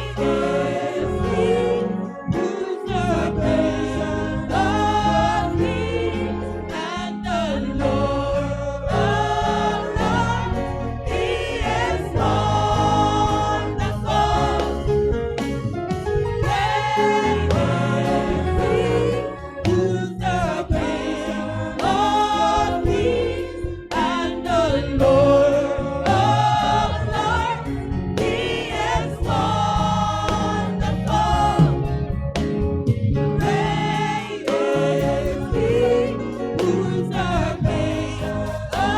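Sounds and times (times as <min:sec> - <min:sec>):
gospel choir singing a hymn: 0:00.0 - 0:38.9
steady low bass: 0:02.9 - 0:38.9.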